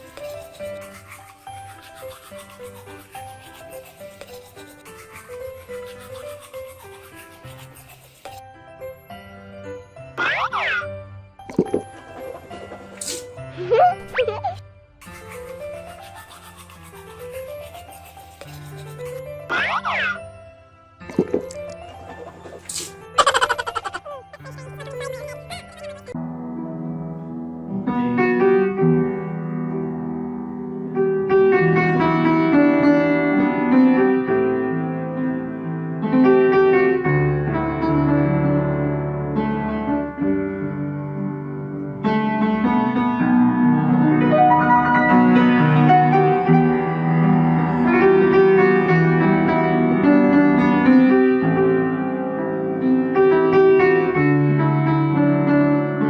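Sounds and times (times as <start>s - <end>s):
gentle piano melody: 26.1s - 56.0s.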